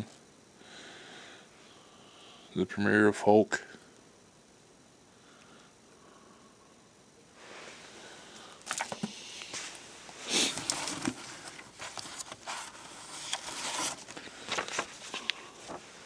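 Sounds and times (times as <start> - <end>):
comic books rustling and crinkling: 8.7 - 16.0.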